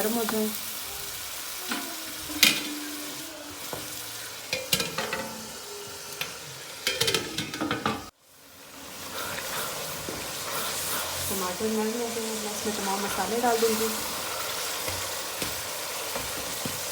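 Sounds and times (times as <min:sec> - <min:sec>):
vegetables sizzling in hot oil: 0:00.0 - 0:16.9
metal utensils clinking on pot: 0:01.7 - 0:03.0, 0:03.7 - 0:05.6, 0:06.2 - 0:08.1.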